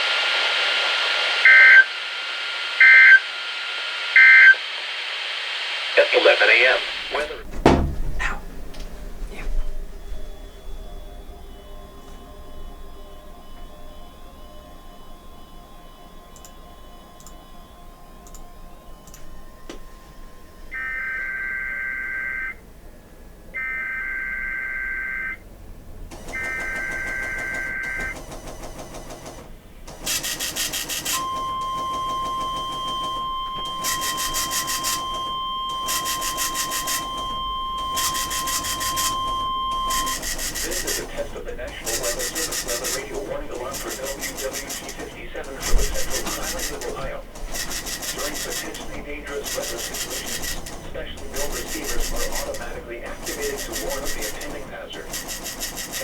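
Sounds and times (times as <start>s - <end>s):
choppy noise bursts: 0.0s - 8.5s, 33.3s - 56.0s
two-tone warbling data bursts: 5.9s - 7.5s, 20.4s - 22.6s, 30.8s - 56.0s
high alert tone: 31.3s - 47.0s.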